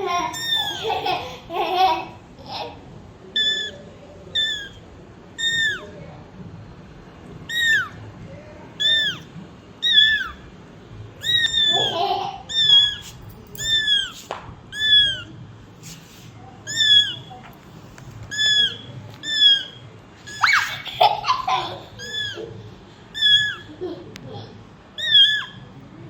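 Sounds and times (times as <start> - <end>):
kitten mewing: 0.3 - 1.0, 3.4 - 4.8, 5.4 - 5.9, 7.5 - 8.0, 8.8 - 10.4, 11.2 - 15.4, 16.6 - 17.3, 18.2 - 20.9, 21.9 - 23.8, 25.0 - 25.7.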